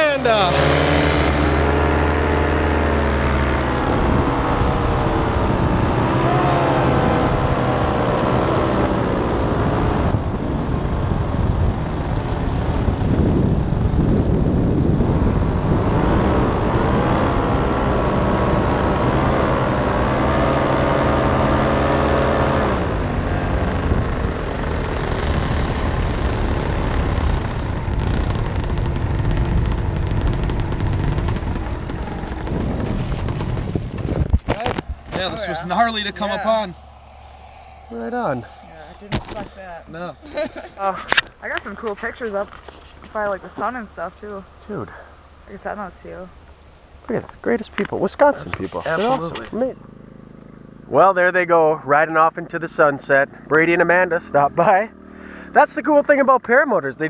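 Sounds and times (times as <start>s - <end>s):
steady rushing noise: 0.0s - 20.1s, 22.8s - 44.8s
paramotor engine running: 0.0s - 37.8s.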